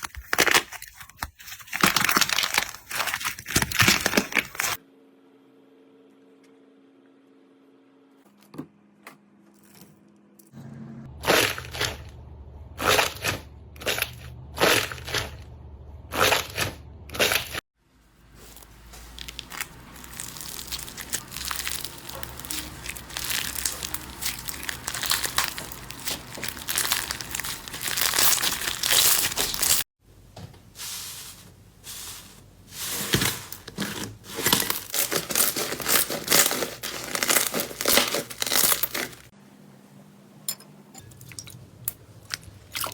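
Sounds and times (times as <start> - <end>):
slime crunching and crackling: 0.0 - 4.8, 11.2 - 12.2, 12.8 - 15.5, 18.2 - 29.9, 32.6 - 39.3, 41.2 - 42.9.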